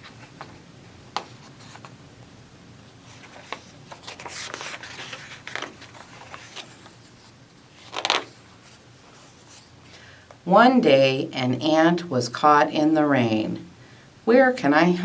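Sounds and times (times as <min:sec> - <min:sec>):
book pages rustling: 0:00.0 - 0:02.0, 0:02.9 - 0:09.8
page turning: 0:01.2 - 0:02.0, 0:03.0 - 0:09.7.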